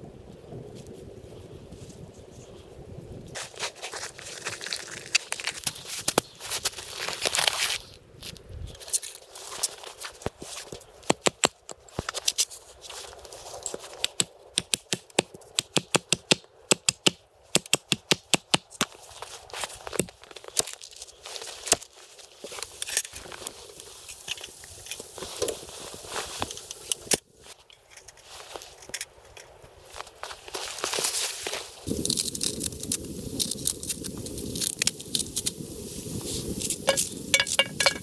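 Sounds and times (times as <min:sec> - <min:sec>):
rustling crinkling: 0:03.4 - 0:08.5, 0:18.9 - 0:38.0
sharp snaps and cracks: 0:03.5 - 0:12.5, 0:31.8 - 0:38.0.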